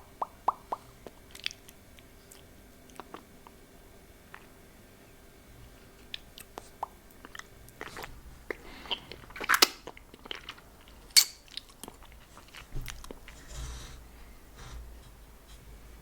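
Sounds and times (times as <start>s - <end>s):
wet mouth clicks and smacks: 0.2s - 3.2s.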